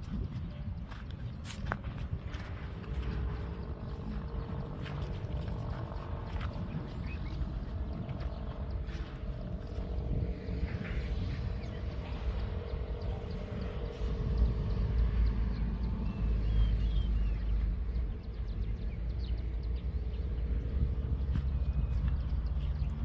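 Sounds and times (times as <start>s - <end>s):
footsteps through crop field: 0.0s - 14.2s, 20.7s - 23.0s
wind rumble on microphone: 0.0s - 23.0s.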